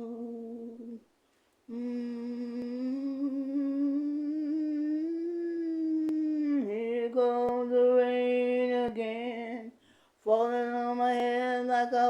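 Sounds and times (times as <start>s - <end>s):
person humming a held note: 1.7s - 7.5s.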